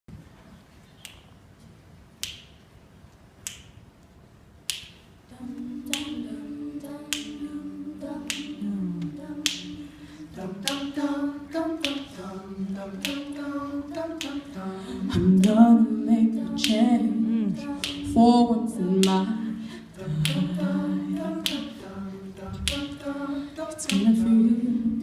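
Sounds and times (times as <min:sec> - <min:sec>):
finger snaps: 0:01.0 - 0:01.3, 0:02.2 - 0:02.7, 0:03.4 - 0:03.8, 0:04.6 - 0:05.1, 0:05.9 - 0:06.2, 0:07.1 - 0:07.4, 0:08.2 - 0:09.7, 0:10.6 - 0:10.9, 0:11.8 - 0:12.2, 0:13.0 - 0:13.4, 0:14.2 - 0:14.6, 0:16.6 - 0:16.9, 0:17.8 - 0:18.0, 0:20.0 - 0:21.8, 0:22.6 - 0:23.0, 0:23.8 - 0:24.1
a cappella group singing chords: 0:05.2 - 0:25.0.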